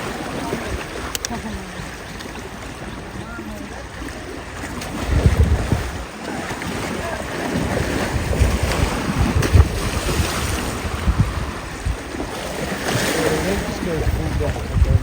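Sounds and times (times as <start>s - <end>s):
river water rushing: 0.0s - 15.0s
wind gusting on microphone: 4.9s - 15.0s.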